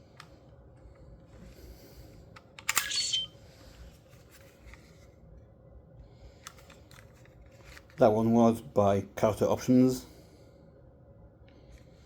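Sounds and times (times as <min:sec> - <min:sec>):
toy handling clicks: 0:02.6 - 0:03.3
toy electronic sound effect: 0:02.9 - 0:03.3.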